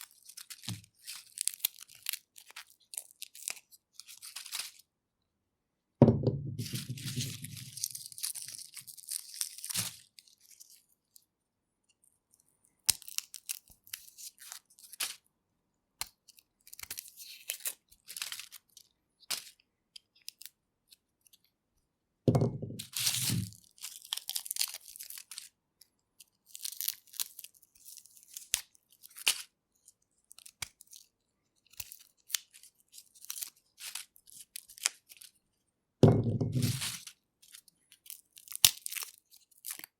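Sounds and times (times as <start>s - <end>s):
garlic clove crunching: 0.0s - 4.8s, 6.7s - 10.6s, 12.9s - 14.0s, 23.4s - 25.5s, 36.1s - 39.9s
papery garlic skins crackling: 0.0s - 4.8s, 6.6s - 10.8s, 12.9s - 15.2s, 16.0s - 20.5s, 22.8s - 25.6s, 26.2s - 35.4s, 36.5s - 39.9s.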